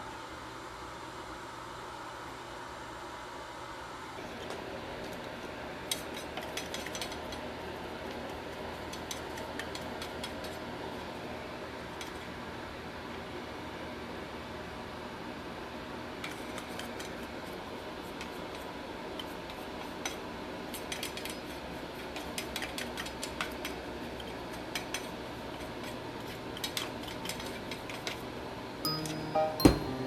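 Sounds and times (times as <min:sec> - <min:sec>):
tableware clinking: 0:28.9 - 0:30.0.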